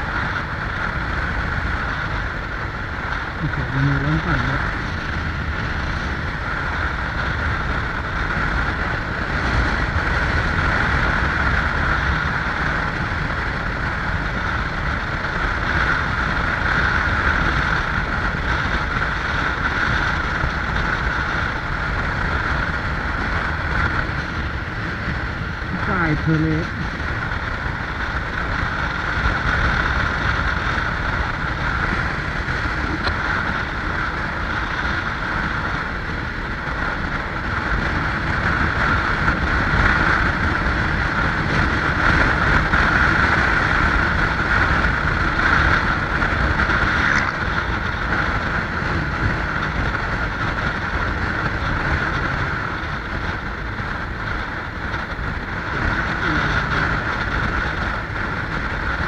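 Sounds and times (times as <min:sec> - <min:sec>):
motorcycle engine and road noise: 0:00.0 - 0:59.0
wind rushing: 0:17.8 - 0:36.5.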